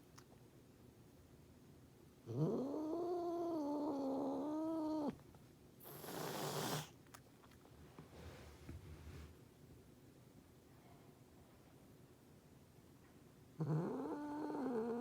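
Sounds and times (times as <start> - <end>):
cat growling: 2.2 - 5.2, 5.8 - 6.9, 13.6 - 15.0
cat hissing: 5.8 - 7.0.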